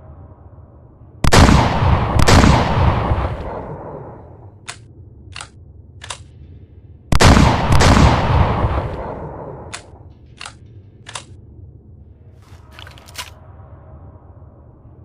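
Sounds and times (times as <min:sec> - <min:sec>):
shotgun shots echoing: 0:01.2 - 0:04.3, 0:07.1 - 0:10.0
short clicks: 0:04.6 - 0:06.3, 0:09.7 - 0:11.3.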